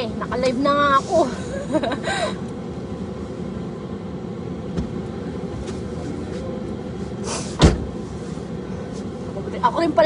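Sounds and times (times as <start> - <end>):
car engine rumbling: 0.0 - 10.0
loud thump: 7.6 - 8.0.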